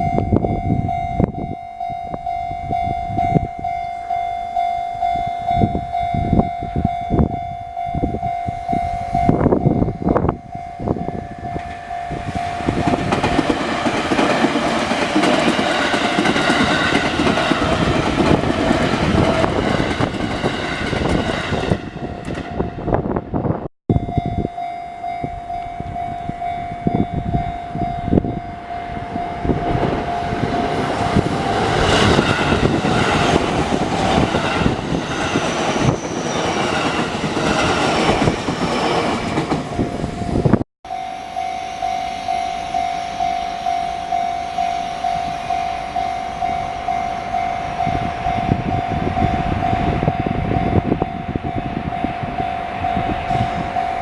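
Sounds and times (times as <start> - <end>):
level crossing warning bell: 0.0 - 23.2, 23.9 - 54.0
train wheels clacking over rail joints: 12.7 - 22.5.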